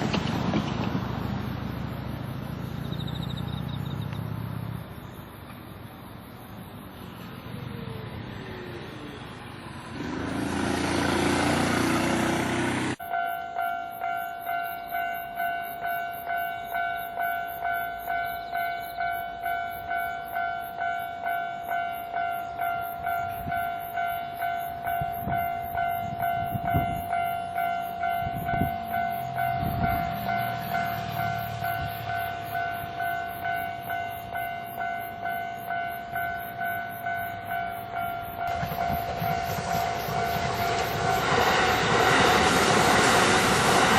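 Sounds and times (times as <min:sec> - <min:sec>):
train passing: 0:00.0 - 0:43.9
level crossing warning bell: 0:13.0 - 0:41.1.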